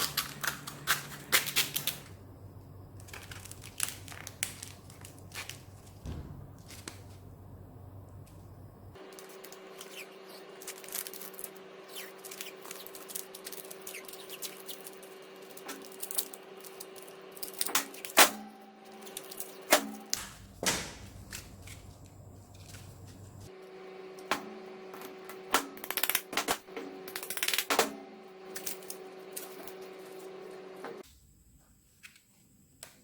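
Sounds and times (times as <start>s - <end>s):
faint steady hum: 0.0s - 25.5s
sharp knocks: 6.0s - 7.1s.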